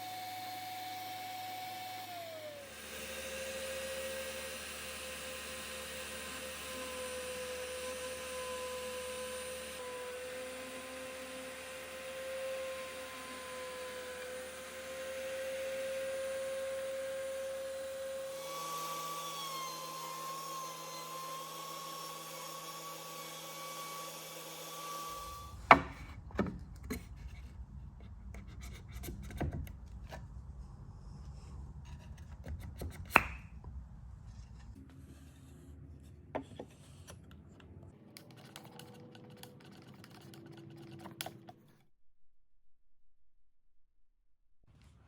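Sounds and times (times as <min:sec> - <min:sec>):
router motor whining: 0:00.0 - 0:27.1
wood rubbing and scraping: 0:25.5 - 0:37.6, 0:38.2 - 0:41.6
sharp wooden knocks: 0:25.7 - 0:26.6, 0:32.8 - 0:33.4.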